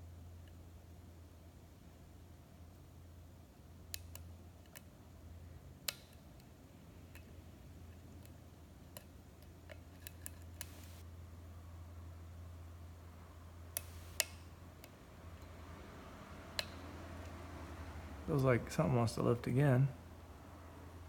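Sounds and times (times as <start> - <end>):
steady low hum: 0.0 - 21.0
lock pick metallic clicks: 16.6 - 17.4.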